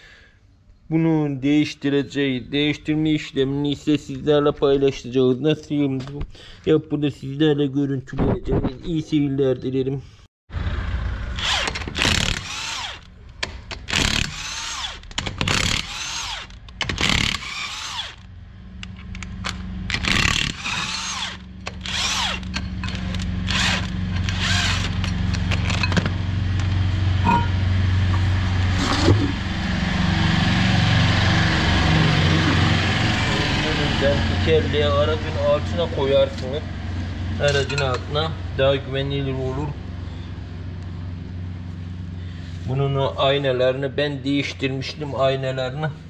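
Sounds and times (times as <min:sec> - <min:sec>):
steady low hum: 0:10.0 - 0:46.0
impact wrench bursts: 0:11.3 - 0:18.3, 0:19.4 - 0:25.9.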